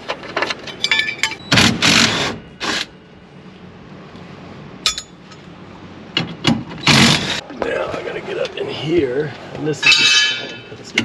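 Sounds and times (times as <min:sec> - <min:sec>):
ringing metallic clink: 0:04.8 - 0:05.2, 0:09.8 - 0:10.7.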